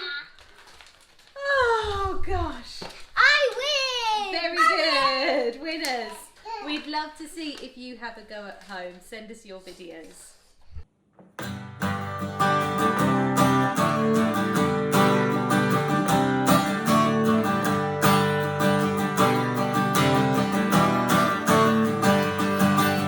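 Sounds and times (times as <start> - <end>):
acoustic guitar strumming: 11.4 - 23.0.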